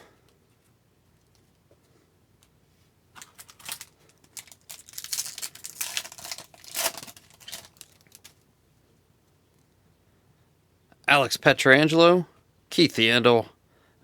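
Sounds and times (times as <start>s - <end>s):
wrapper tearing and crinkling: 3.2s - 8.4s.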